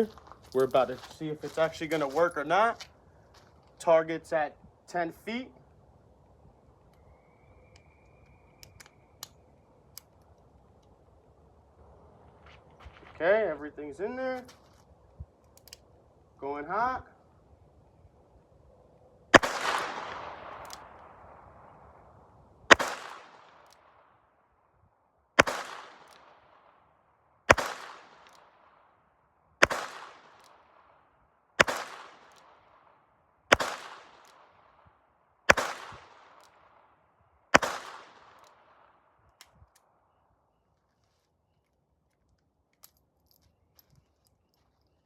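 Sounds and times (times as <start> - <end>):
faint clicks: 7.7 - 11.0
revolver gunshots: 19.3 - 22.0, 22.7 - 24.0, 25.4 - 26.8, 27.5 - 28.7, 29.6 - 30.8, 31.6 - 32.9, 33.5 - 34.6, 35.5 - 36.8, 37.5 - 38.9.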